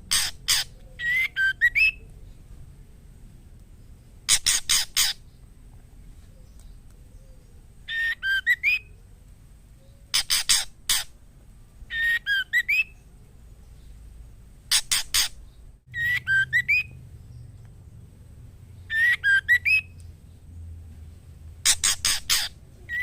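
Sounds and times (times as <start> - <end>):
bird harsh rasping notes: 0.0 - 2.4, 4.2 - 5.4, 7.9 - 9.0, 10.0 - 11.2, 11.9 - 13.1, 14.7 - 17.6, 18.8 - 20.0, 21.5 - 23.0
bird whistled phrases: 0.1 - 2.1, 7.9 - 9.0, 11.9 - 13.0, 15.9 - 17.0, 18.9 - 20.0, 21.7 - 23.0.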